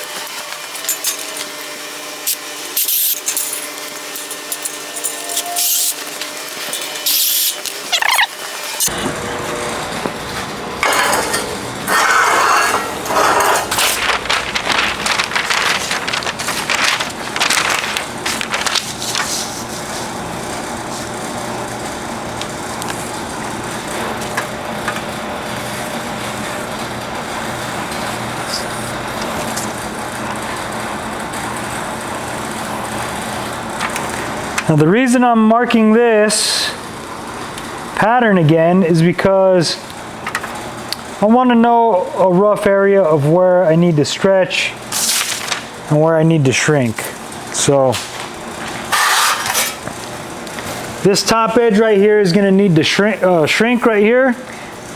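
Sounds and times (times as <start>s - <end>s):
steady background hum: 0.0s - 54.9s
sheet metal clanking: 10.8s - 16.7s.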